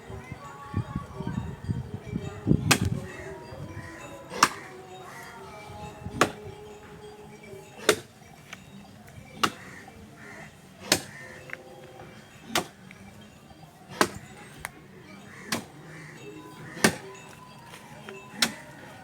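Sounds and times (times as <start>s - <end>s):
axe chopping tree trunk: 2.7s - 3.0s, 7.8s - 8.1s, 9.4s - 9.7s, 10.8s - 11.2s, 12.5s - 12.8s, 14.0s - 14.3s, 15.5s - 15.8s, 16.8s - 17.1s, 18.4s - 18.6s.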